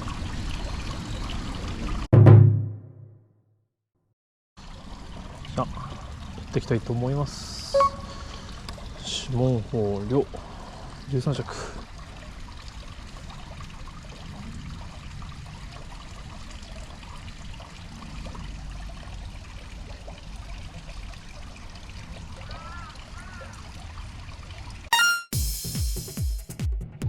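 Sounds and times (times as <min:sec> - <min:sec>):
water trickling: 0:00.0 - 0:02.1, 0:04.6 - 0:24.9
short chirps: 0:07.8 - 0:08.2, 0:24.9 - 0:25.4
music: 0:24.9 - 0:27.0.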